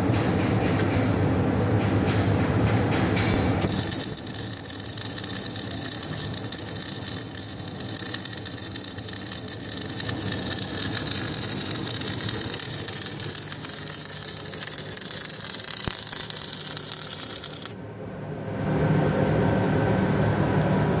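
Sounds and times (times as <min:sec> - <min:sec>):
low machinery hum: 0:00.0 - 0:21.0
arc welding crackle: 0:03.6 - 0:17.8.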